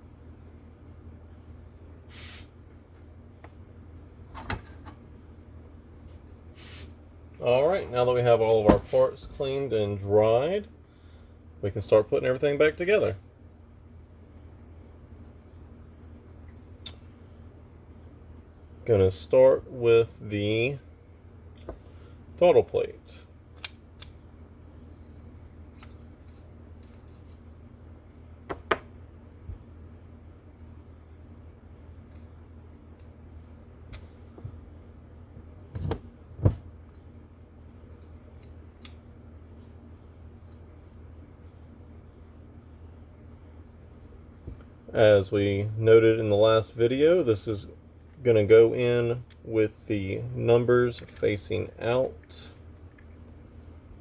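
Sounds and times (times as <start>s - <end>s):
steady low hum: 0.0s - 54.0s
short hissy bursts: 2.1s - 2.6s.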